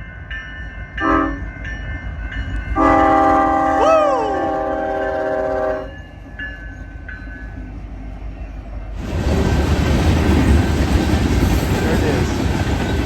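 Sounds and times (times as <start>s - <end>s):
passing train rumble: 0.0s - 13.0s
train horn chord: 1.0s - 1.5s, 2.8s - 6.0s.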